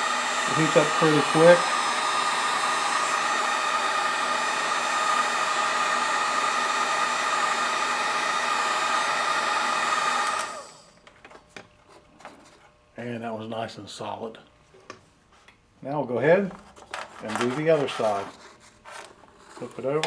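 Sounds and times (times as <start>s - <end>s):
heat gun blowing hot air: 0.0s - 10.9s.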